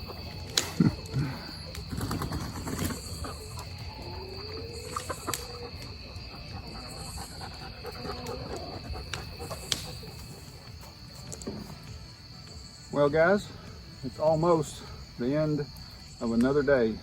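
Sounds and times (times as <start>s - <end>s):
low animal calls: 0.0s - 10.7s
high insect trill: 0.0s - 17.0s.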